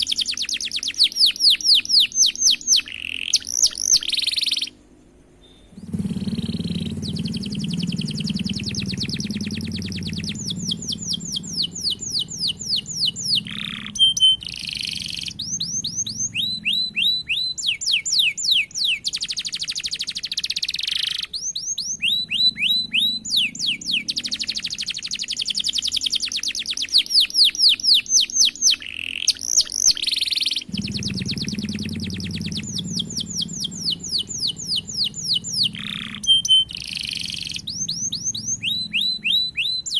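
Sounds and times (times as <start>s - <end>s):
canary singing trills: 0.0s - 39.9s
low hum: 4.7s - 20.3s, 21.4s - 28.9s, 29.7s - 39.9s.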